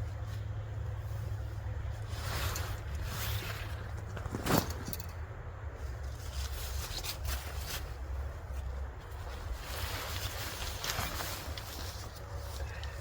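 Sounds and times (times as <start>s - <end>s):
sheet and pack rustling: 2.0s - 5.1s, 6.1s - 13.0s.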